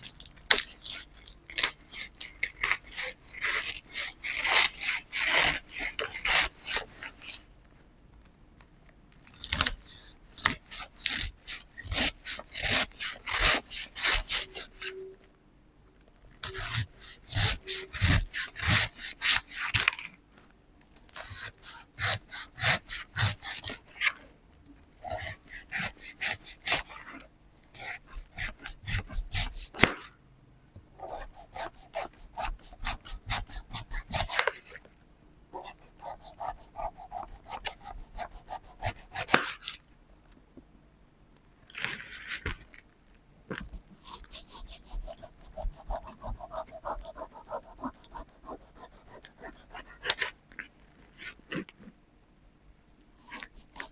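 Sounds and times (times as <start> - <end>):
knife sawing through pineapple rind: 0.6 - 7.4, 9.7 - 14.9, 16.4 - 20.1, 21.1 - 24.0, 25.0 - 30.1, 31.0 - 34.8, 35.6 - 39.8, 43.8 - 50.4, 53.2 - 53.9.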